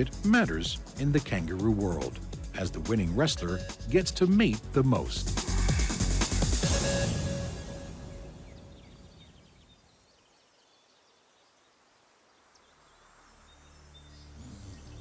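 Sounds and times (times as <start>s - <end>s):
background music: 0.0s - 9.2s
outdoor nature ambience: 0.0s - 15.0s.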